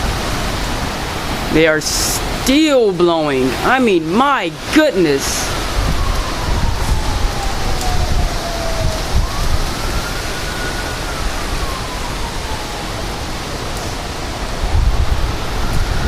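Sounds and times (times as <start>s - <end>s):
rain: 0.0s - 16.0s
storm wind gusting: 0.0s - 16.0s
wind buffeting microphone: 4.6s - 16.0s.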